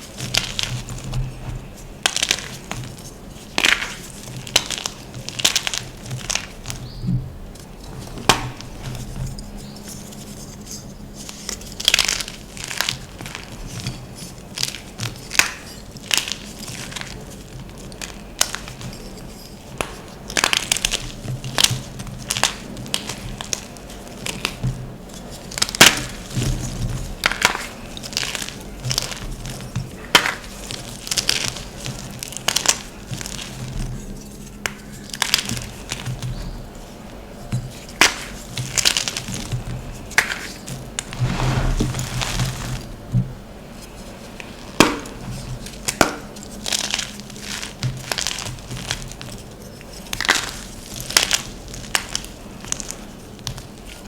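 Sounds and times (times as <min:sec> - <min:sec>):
chalk crunching and crackling: 0:40.3 - 0:43.2.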